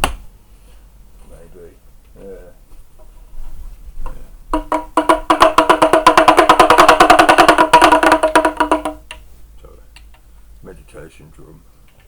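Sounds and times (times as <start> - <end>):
meditation drum roll: 4.5 - 9.1.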